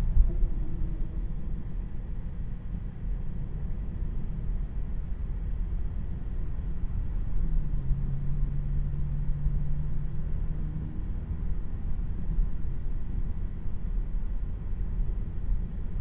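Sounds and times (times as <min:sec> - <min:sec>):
road and tyre rumble: 0:00.0 - 0:02.3
steady low hum: 0:00.0 - 0:02.4.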